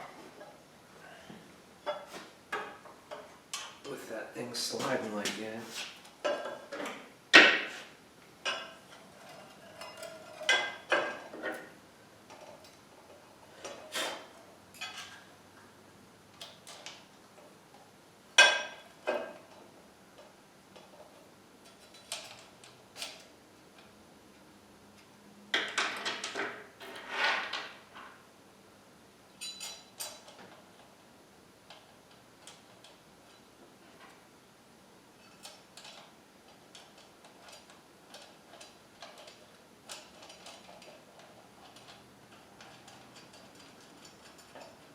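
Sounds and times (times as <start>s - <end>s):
steel parts and tools clinking: 8.4s - 11.7s, 13.6s - 15.3s, 29.3s - 30.5s, 35.2s - 44.9s.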